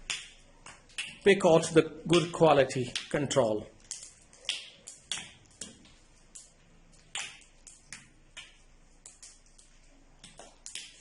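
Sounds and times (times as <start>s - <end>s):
dried soap nuts clicking: 3.8s - 11.0s.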